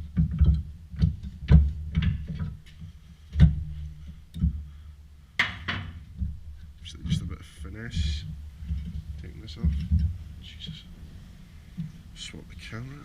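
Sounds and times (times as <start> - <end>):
metal knocks and clunks: 0.0 - 4.7, 5.4 - 10.9.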